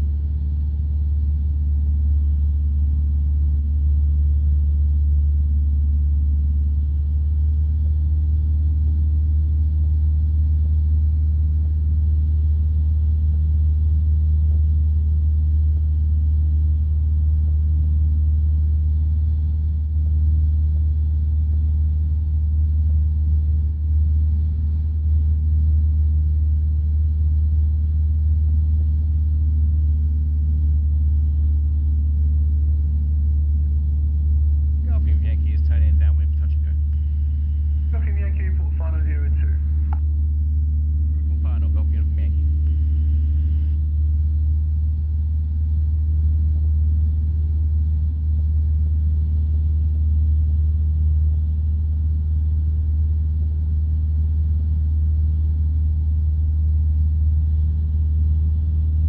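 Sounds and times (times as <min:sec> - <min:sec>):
light aircraft engine droning: 0:22.7 - 0:53.9.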